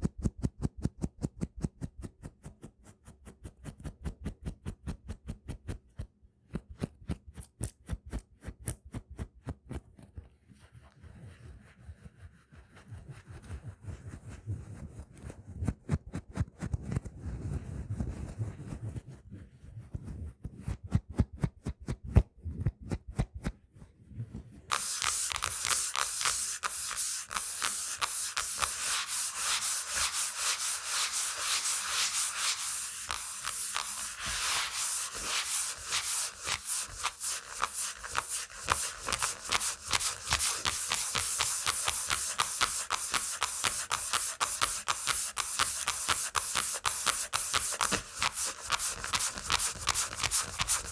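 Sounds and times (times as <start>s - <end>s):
fingernails scratching textured surface: 24.7s - 43.4s.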